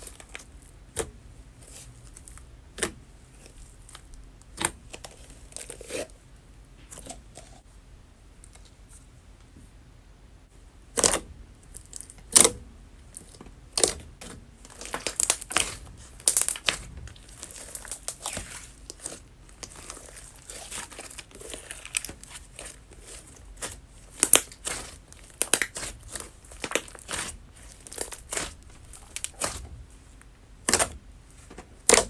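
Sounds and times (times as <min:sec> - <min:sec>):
slime crackling and clicking: 0:14.7 - 0:29.6
slime popping: 0:14.8 - 0:29.6.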